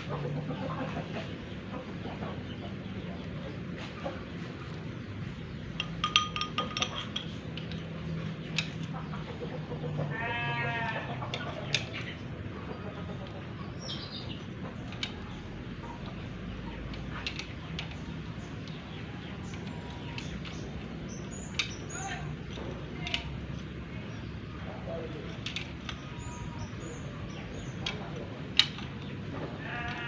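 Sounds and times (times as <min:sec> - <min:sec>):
low background hum: 0:00.0 - 0:30.0
light clinks: 0:05.6 - 0:07.9
goat bleating: 0:10.0 - 0:11.2, 0:29.5 - 0:30.0.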